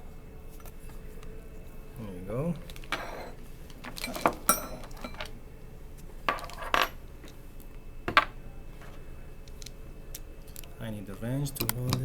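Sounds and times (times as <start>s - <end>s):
metal tools clinking and knocking: 2.6s - 5.4s, 6.2s - 7.4s, 8.1s - 9.7s.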